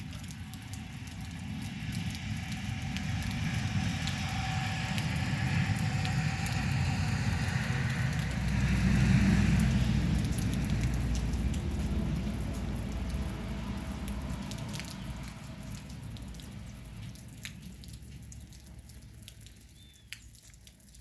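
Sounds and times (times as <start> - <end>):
sharp drips: 0.0 - 21.0
steady rain: 0.0 - 21.0
low rumble: 0.8 - 16.8.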